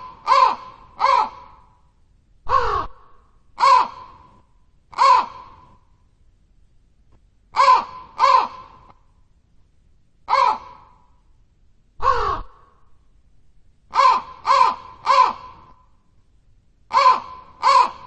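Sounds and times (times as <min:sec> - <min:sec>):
crow cawing: 0:00.0 - 0:01.8, 0:02.5 - 0:05.8, 0:07.6 - 0:09.0, 0:10.3 - 0:11.1, 0:12.0 - 0:12.8, 0:13.9 - 0:15.9, 0:16.9 - 0:18.0.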